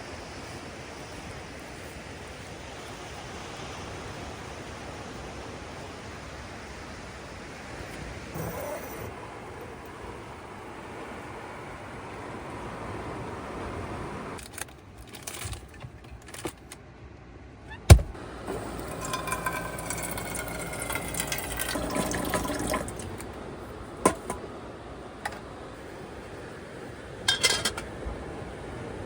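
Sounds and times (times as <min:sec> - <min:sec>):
loud thump: 0:17.9 - 0:18.2
liquid pouring into container: 0:18.4 - 0:23.3.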